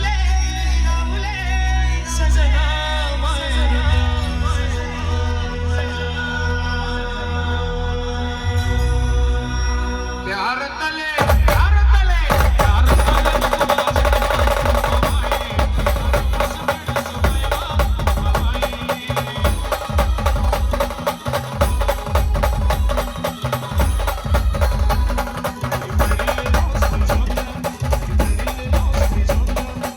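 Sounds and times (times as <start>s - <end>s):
fast drum beat: 11.2s - 29.9s
heavy bass drum: 11.2s - 29.9s.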